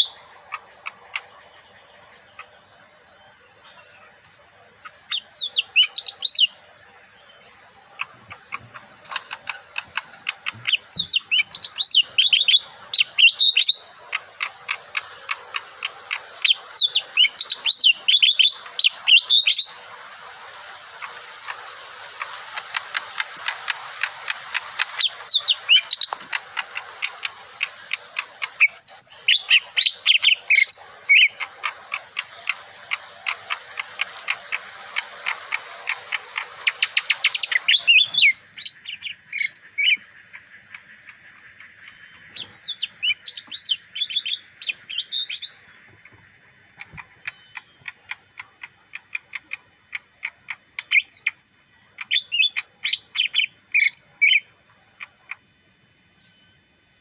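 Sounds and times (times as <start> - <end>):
bird chirping phrases: 0.0 - 55.4, 56.1 - 57.0
fast clicks: 7.9 - 11.6, 12.5 - 16.8, 20.3 - 29.8, 30.5 - 38.0, 46.7 - 51.0.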